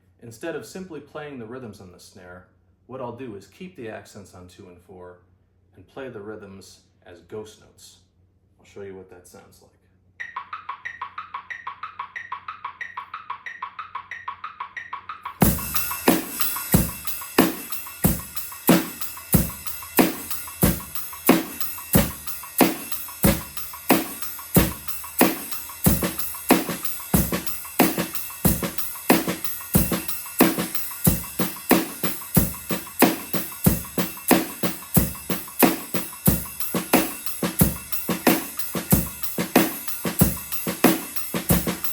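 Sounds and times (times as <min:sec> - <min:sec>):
metronome clicking: 0:10.2 - 0:41.9
snare drum accents: 0:10.2 - 0:41.9
kick drum: 0:15.4 - 0:41.9
ride cymbal: 0:15.4 - 0:41.9.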